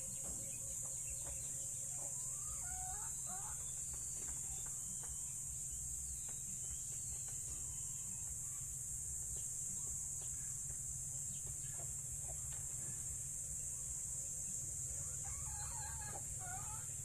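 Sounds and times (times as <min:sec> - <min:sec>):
insects droning: 0:00.0 - 0:17.0.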